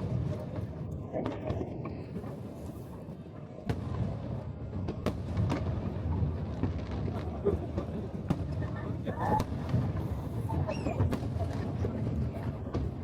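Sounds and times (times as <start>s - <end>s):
low din of firework bursts: 0.0s - 13.0s
fireworks bangs: 3.7s - 13.0s.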